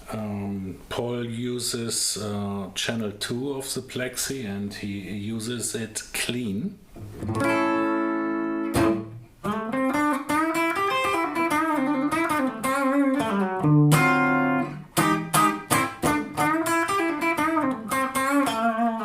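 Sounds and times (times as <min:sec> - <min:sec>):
clean electric guitar playing: 0:07.0 - 0:19.0.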